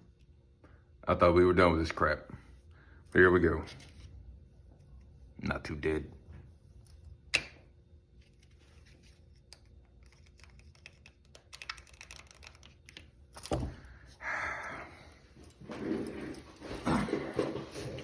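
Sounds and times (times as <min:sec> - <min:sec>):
handcuffs clicking and rattling: 0:10.0 - 0:13.6.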